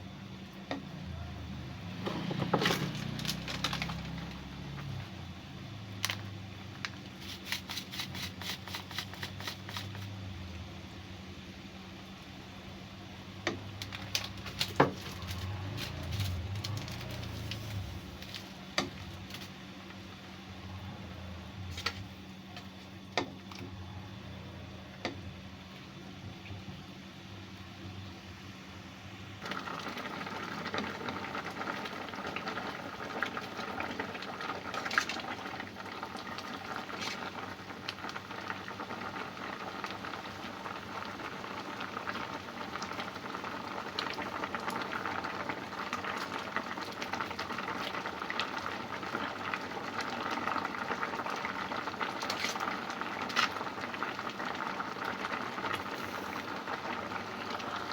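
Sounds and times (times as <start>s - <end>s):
pot boiling: 0.0s - 57.9s.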